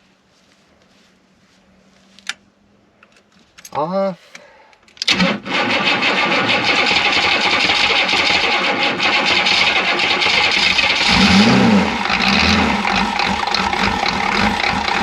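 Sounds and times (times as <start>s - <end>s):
diesel engine rough clatter: 5.4s - 15.0s.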